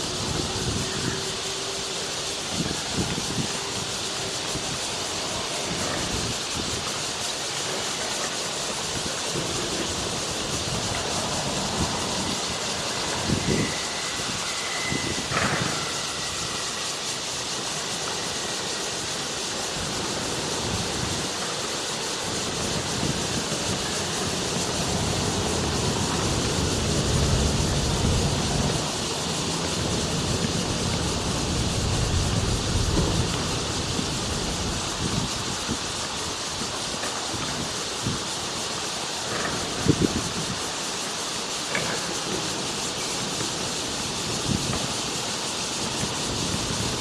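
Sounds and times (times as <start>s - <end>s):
faint high whistle: 12.8s - 17.2s.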